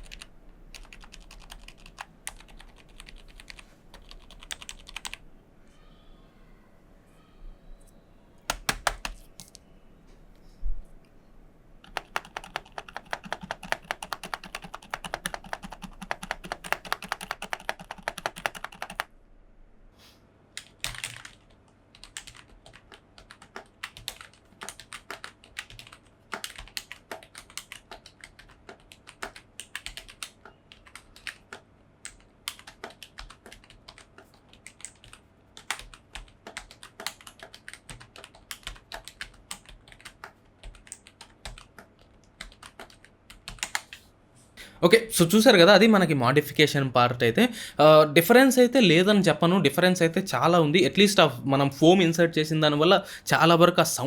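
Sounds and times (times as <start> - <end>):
keyboard typing: 0.0 - 5.2, 8.4 - 9.7, 11.8 - 19.1, 20.6 - 44.0.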